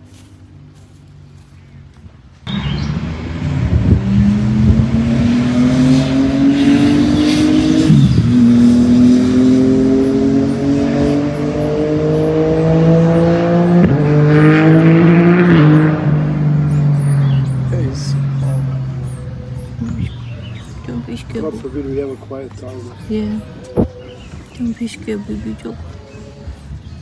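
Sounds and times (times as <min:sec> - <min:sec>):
vehicle engine accelerating hard: 0:02.4 - 0:27.0.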